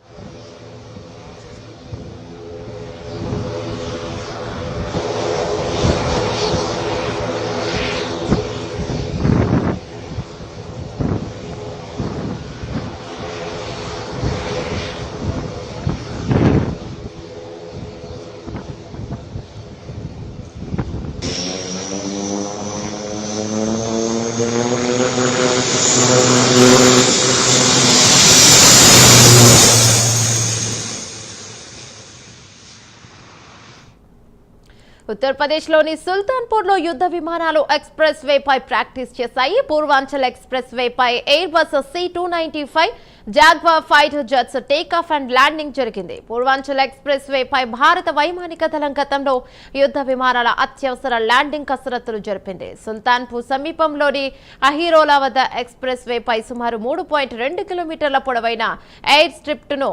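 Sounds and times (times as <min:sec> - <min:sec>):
military aircraft flying low: 0:00.0 - 0:33.9.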